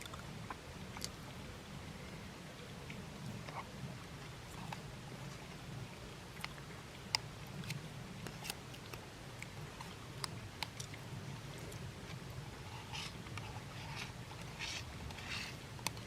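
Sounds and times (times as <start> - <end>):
scraping rustles: 11.6 - 16.0.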